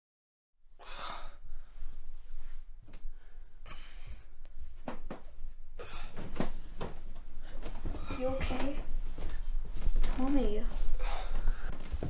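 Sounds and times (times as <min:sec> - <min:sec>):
person breathing heavily: 0:00.8 - 0:04.4, 0:05.8 - 0:09.0, 0:10.8 - 0:12.0.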